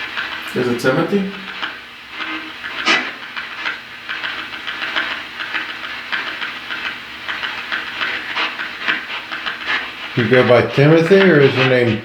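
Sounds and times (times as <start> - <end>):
radio static bursts: 0.5 - 3.2, 10.1 - 12.0.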